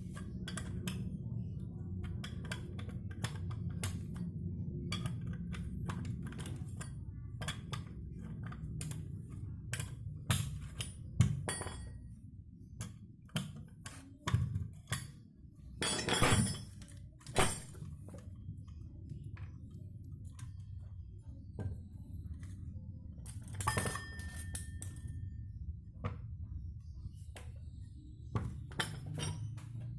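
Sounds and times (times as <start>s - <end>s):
steady low hum: 0.0s - 29.9s
metal parts clanking on workbench: 15.8s - 17.9s, 28.7s - 29.8s.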